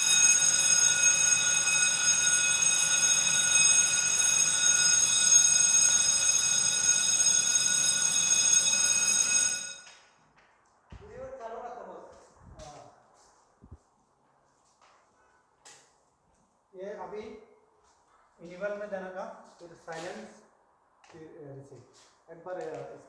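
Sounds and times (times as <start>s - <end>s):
fire alarm shrill tone: 0.0s - 10.0s.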